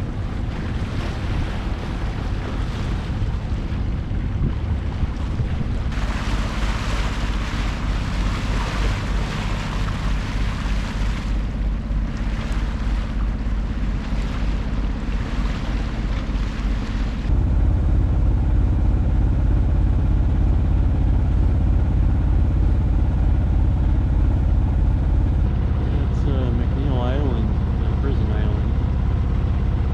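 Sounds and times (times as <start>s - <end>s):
wind noise: 0.0s - 7.4s
rushing water: 0.0s - 17.4s
boat engine drone: 0.0s - 29.9s.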